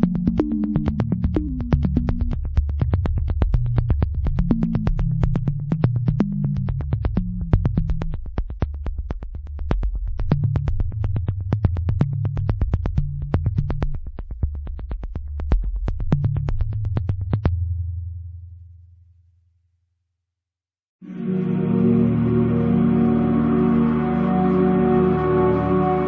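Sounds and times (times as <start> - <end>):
synthesizer bass line: 0.0 - 2.6, 21.0 - 26.0.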